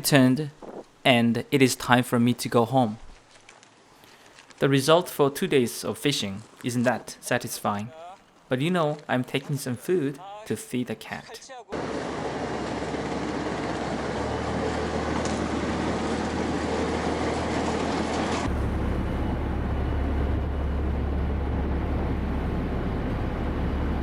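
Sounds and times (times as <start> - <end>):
boat engine droning: 11.8 - 24.0.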